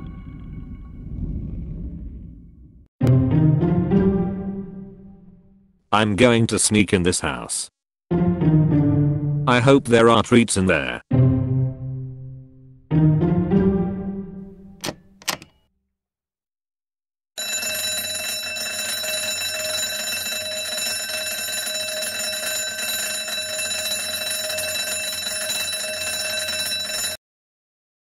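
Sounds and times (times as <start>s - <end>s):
electric alarm bell ringing: 17.4s - 27.2s.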